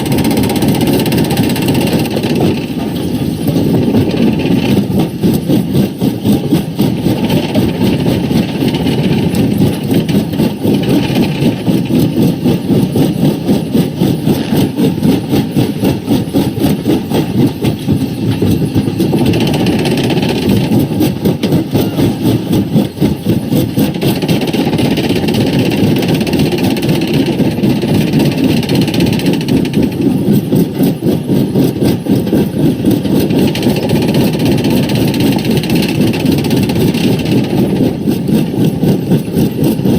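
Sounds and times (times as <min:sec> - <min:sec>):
rock crusher running: 0:00.0 - 0:39.9.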